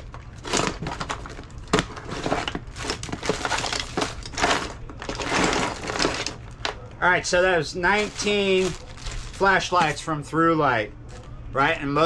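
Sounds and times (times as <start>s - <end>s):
packaging crinkling and rustling: 0.0s - 6.8s, 7.7s - 10.1s.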